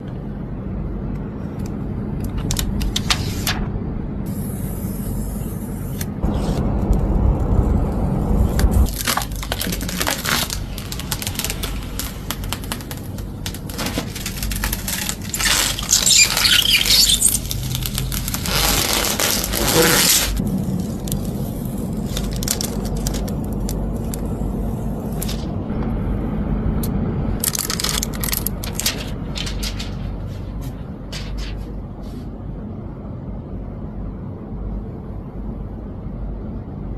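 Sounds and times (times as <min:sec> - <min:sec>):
plastic film crinkling: 0:08.8 - 0:24.4, 0:27.4 - 0:31.7.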